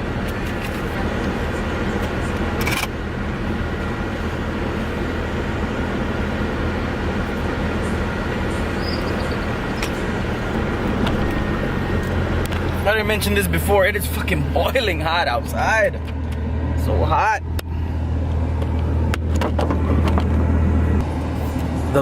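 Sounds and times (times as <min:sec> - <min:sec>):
car engine hum: 0:00.0 - 0:22.0.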